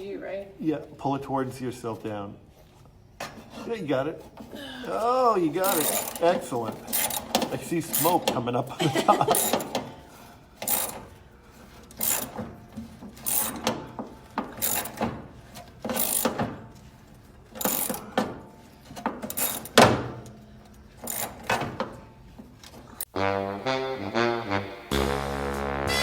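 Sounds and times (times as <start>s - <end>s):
ratchet winch pawl clicks: 5.6s - 8.5s, 10.6s - 11.1s, 11.8s - 12.4s, 13.2s - 13.8s, 14.5s - 16.4s, 17.6s - 18.2s, 19.3s - 21.7s.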